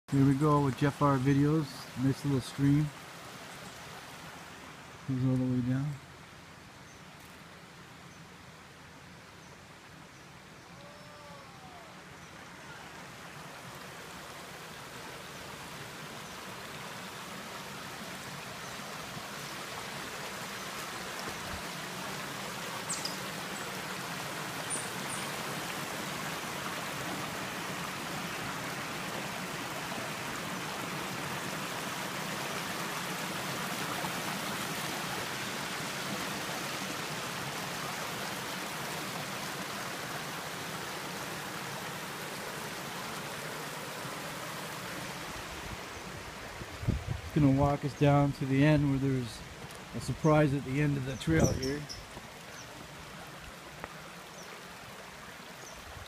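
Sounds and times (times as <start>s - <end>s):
stream splashing over rocks: 11.9s - 56.0s.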